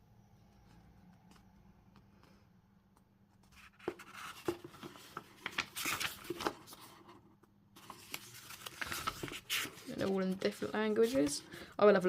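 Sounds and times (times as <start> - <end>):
paper rustling: 3.4 - 7.2, 7.8 - 11.8.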